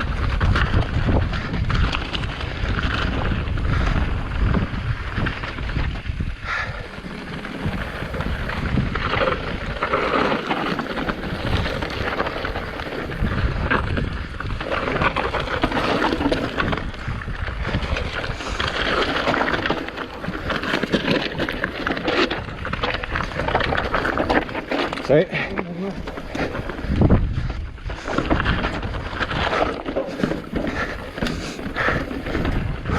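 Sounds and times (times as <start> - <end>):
bike tyres and frame rattling: 0.0 - 32.9
wind rushing over microphone: 0.0 - 32.9.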